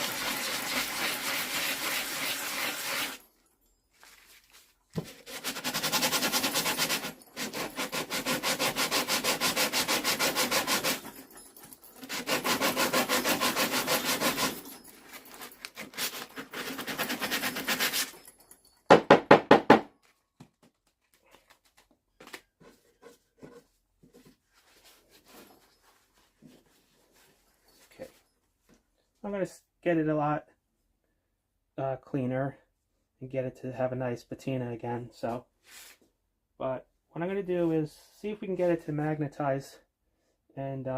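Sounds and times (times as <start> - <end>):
sandpaper rubbing strokes: 0.0 - 3.2, 5.1 - 11.2, 12.0 - 14.9, 15.8 - 18.2.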